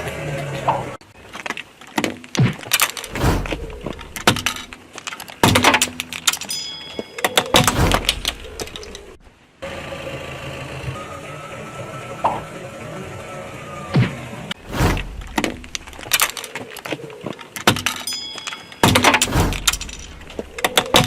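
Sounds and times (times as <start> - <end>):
low rumble: 3.1 - 4.8, 7.7 - 9.3, 14.6 - 16.2
eyeglasses cracking under car tyre: 15.0 - 21.0.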